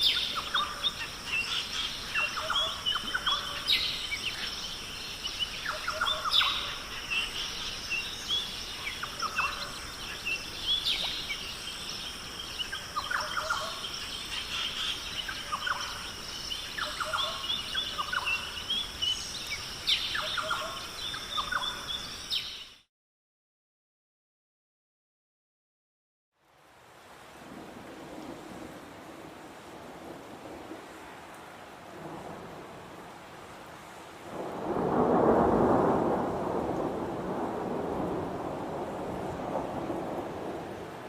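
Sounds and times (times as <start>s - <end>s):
birds calling and chirping: 0.0s - 22.8s.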